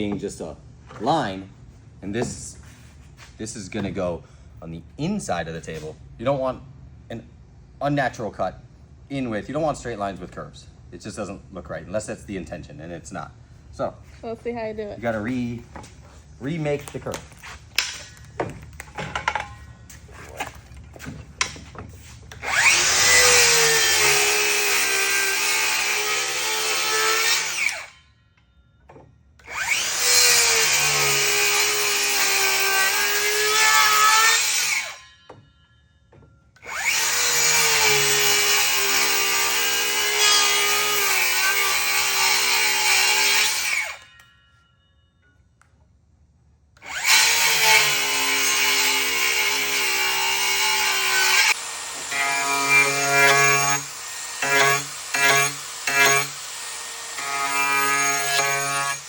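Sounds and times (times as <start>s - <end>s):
power tool cutting wood: 22.3s - 28.0s, 29.4s - 35.3s, 36.6s - 44.3s, 46.8s - 59.0s.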